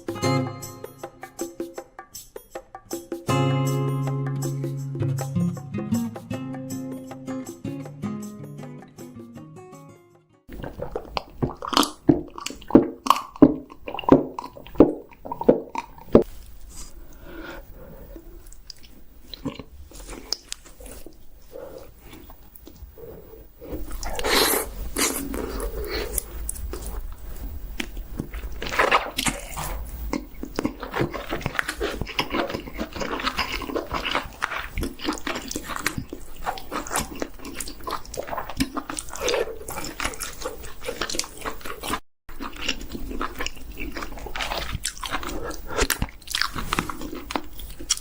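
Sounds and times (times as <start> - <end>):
chewing and crunching food: 10.5 - 48.0.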